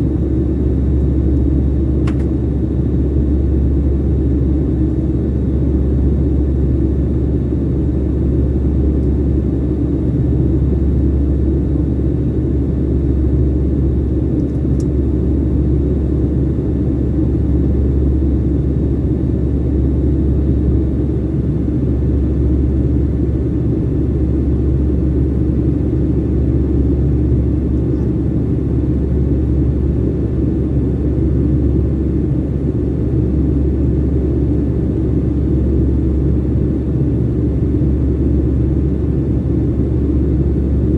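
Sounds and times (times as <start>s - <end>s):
airliner cabin engine rumble: 0.0s - 40.9s
faint click: 2.0s - 2.3s.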